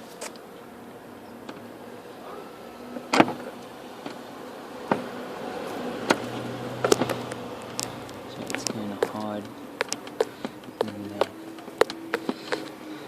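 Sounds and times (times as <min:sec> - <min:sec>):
clicks and knocks of car door parts: 0:04.8 - 0:05.1, 0:06.0 - 0:07.8.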